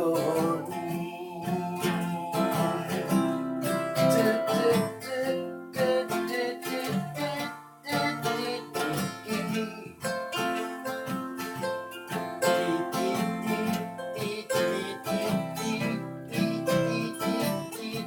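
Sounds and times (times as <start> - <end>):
strummed acoustic guitar chords: 0.0 - 18.0.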